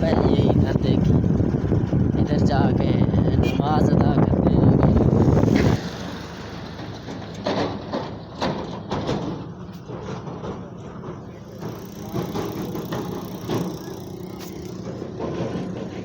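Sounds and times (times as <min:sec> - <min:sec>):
vehicle engine running: 0:04.7 - 0:16.0.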